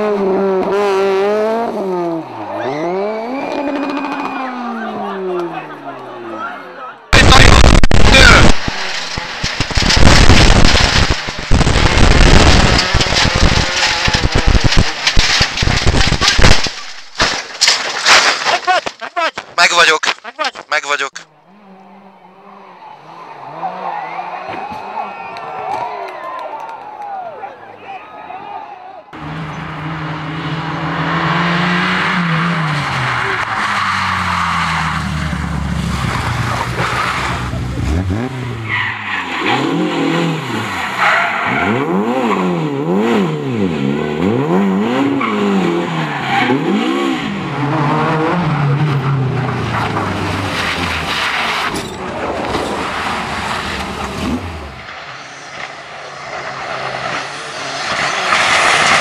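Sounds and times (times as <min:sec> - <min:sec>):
racing car engine revving: 0:00.0 - 0:06.3, 0:21.4 - 0:25.4, 0:29.2 - 0:59.0.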